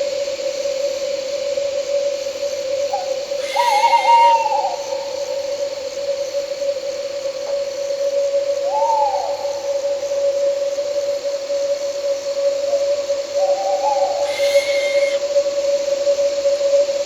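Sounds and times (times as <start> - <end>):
night insects droning: 0.0 - 17.0
owl hooting: 2.9 - 5.5, 8.6 - 9.7, 13.4 - 15.2.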